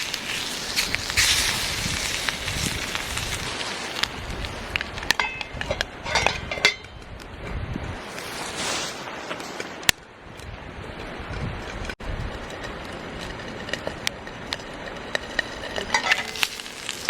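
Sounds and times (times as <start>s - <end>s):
background hiss: 0.0s - 5.0s
metal cookware clinking: 5.2s - 7.0s, 14.8s - 16.9s.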